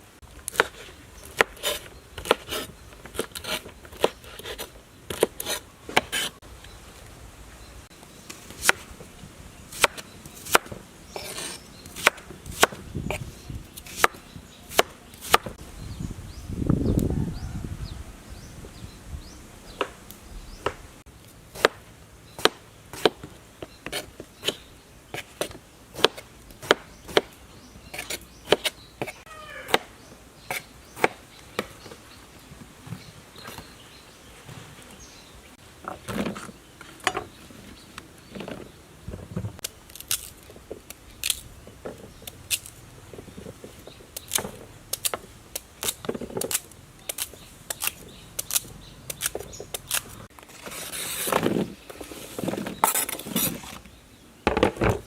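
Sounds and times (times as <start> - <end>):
knife chopping on wooden board: 13.9 - 15.6, 25.2 - 27.4.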